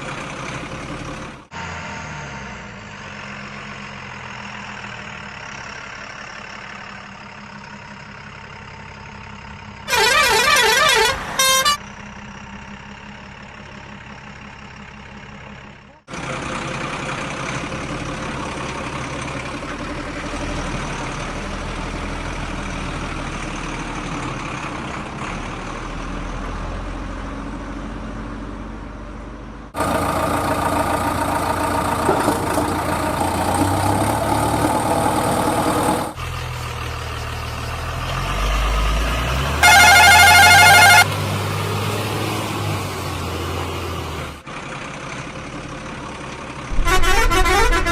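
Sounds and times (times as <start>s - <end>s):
diesel engines running: 0.0s - 47.9s
warbling horn blast: 9.9s - 11.8s, 39.6s - 41.1s, 46.7s - 47.9s.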